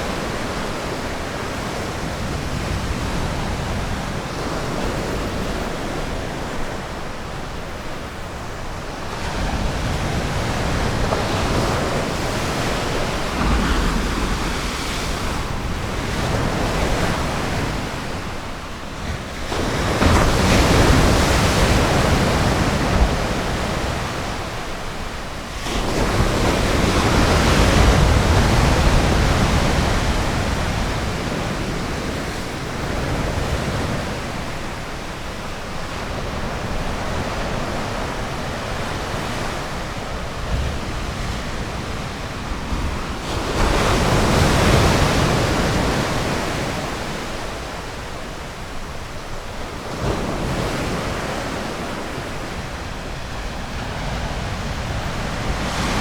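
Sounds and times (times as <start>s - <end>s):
waves breaking on beach: 0.0s - 56.0s.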